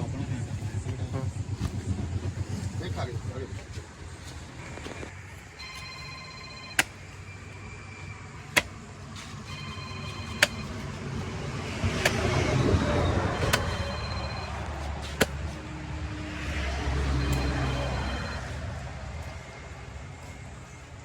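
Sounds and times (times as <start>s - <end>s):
market noise: 0.0s - 21.0s
traffic noise: 0.0s - 21.0s
steady tone: 9.4s - 19.6s
cleaver chopping fish: 11.9s - 12.6s, 15.0s - 15.6s.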